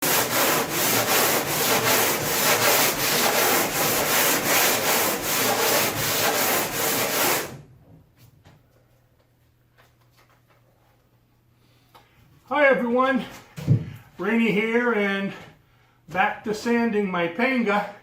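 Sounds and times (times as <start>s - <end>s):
sandpaper rubbing on wood: 0.0s - 7.5s.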